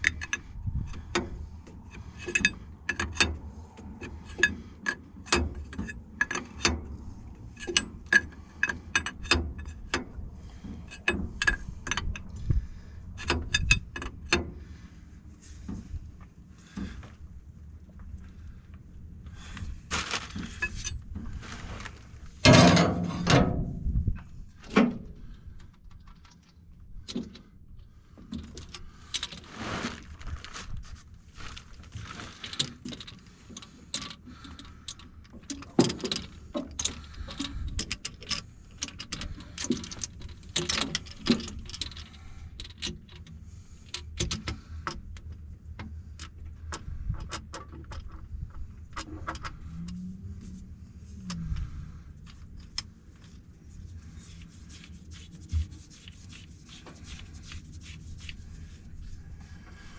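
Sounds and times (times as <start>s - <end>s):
wrench clinking on metal fittings: 24.6s - 27.5s, 32.5s - 43.3s.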